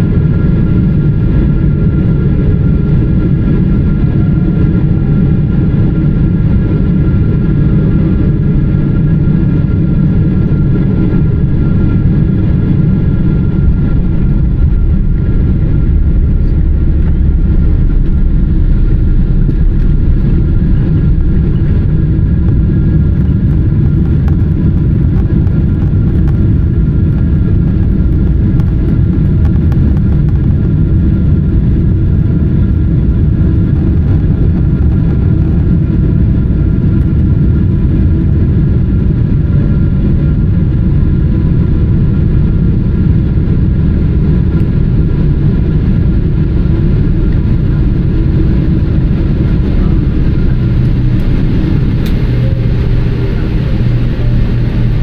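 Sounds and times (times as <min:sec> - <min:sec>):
jet engine rumble in cabin: 0:00.0 - 0:55.0
steady whining tones: 0:00.0 - 0:55.0
rushing air: 0:08.6 - 0:26.7, 0:45.7 - 0:55.0.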